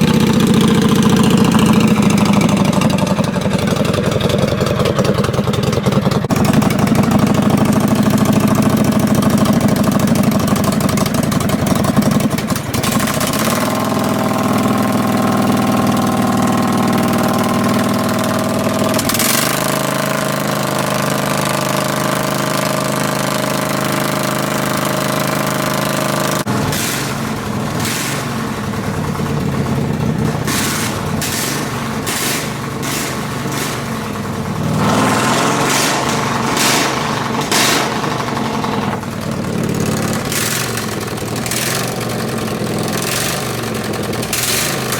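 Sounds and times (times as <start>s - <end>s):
riding mower engine running loud: 0.0s - 44.9s
sharp cracks: 26.5s - 29.4s, 30.2s - 44.9s.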